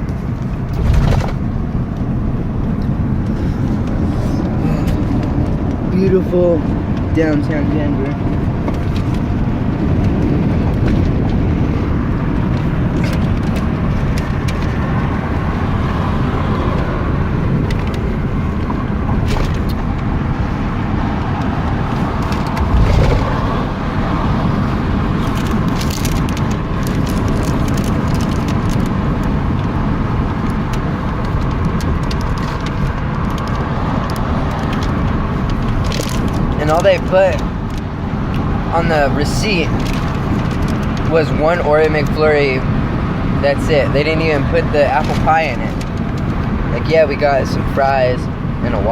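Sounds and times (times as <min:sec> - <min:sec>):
car road and engine rumble: 0:00.0 - 0:48.9
car bump: 0:00.7 - 0:01.5.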